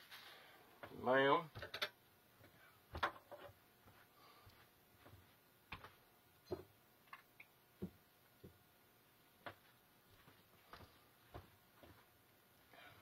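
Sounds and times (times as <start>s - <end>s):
small objects clicking and knocking: 1.5s - 2.0s.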